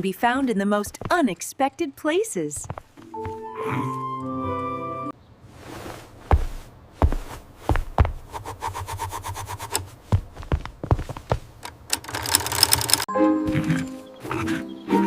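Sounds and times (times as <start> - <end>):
rapid even ticking: 11.6 - 13.1
knocks and clicks: 11.6 - 13.8.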